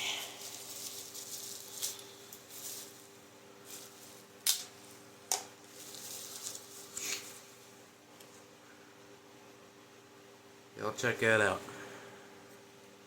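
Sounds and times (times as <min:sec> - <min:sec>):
packaging rustling: 0:00.0 - 0:07.8.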